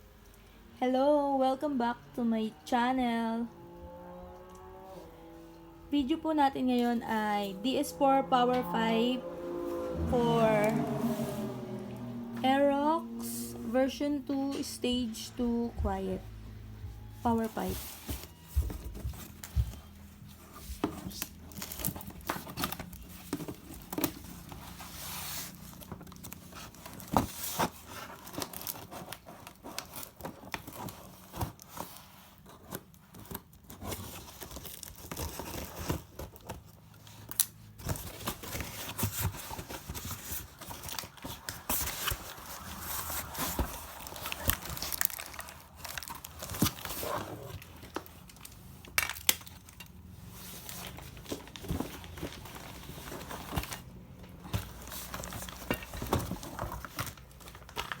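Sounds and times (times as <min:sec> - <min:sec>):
wrapping tearing and crinkling: 0:17.3 - 0:58.0
packaging rustling: 0:17.4 - 0:58.0.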